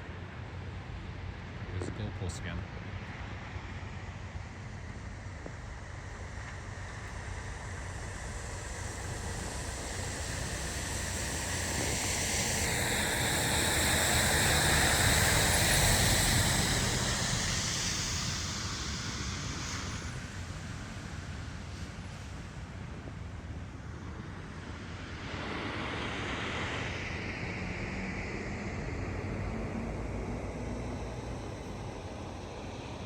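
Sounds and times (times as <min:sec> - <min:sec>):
vehicle tyres hissing on wet road: 0:06.0 - 0:22.8.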